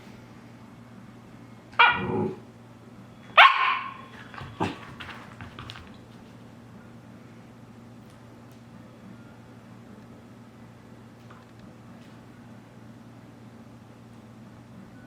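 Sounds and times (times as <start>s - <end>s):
dog barking: 1.8s - 2.2s, 3.3s - 5.2s.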